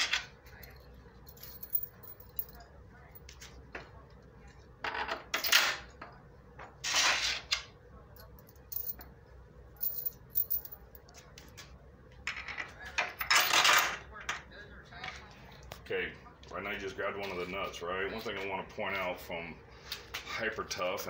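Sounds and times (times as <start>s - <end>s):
metal hardware clinking: 1.3s - 2.6s, 8.2s - 9.1s, 9.8s - 11.1s.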